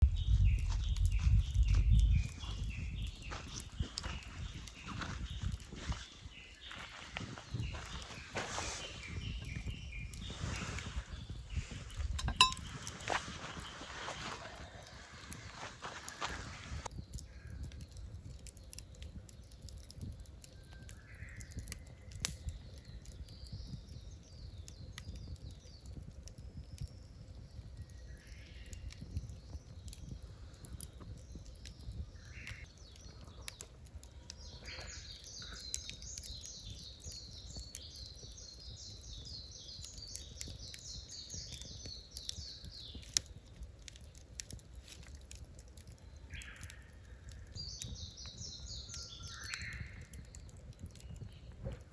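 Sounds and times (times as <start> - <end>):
birds calling: 0.2 - 17.7, 31.2 - 43.2, 45.2 - 51.4.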